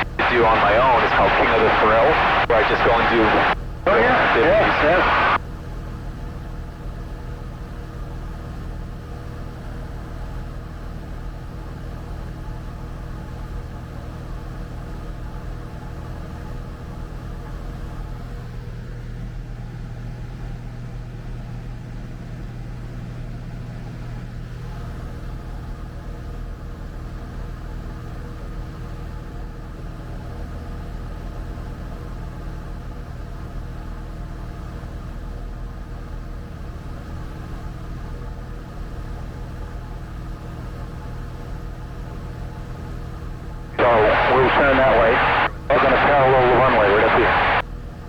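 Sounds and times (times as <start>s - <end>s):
airplane engine and propeller droning: 0.0s - 5.4s, 43.8s - 47.6s.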